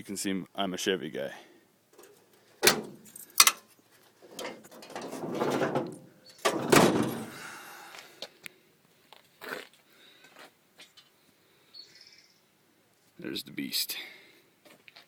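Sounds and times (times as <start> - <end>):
hood latch clicks: 2.0 - 3.6
clunks and rustling handling: 2.0 - 7.4.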